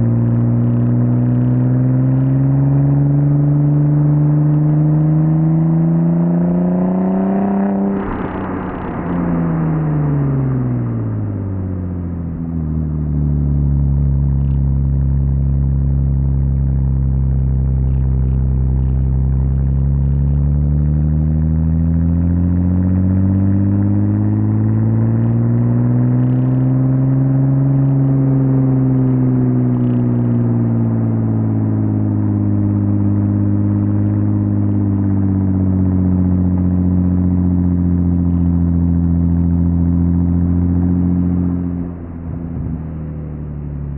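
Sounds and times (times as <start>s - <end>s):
car engine revving: 0.0s - 43.9s
engine clatter: 7.9s - 22.1s.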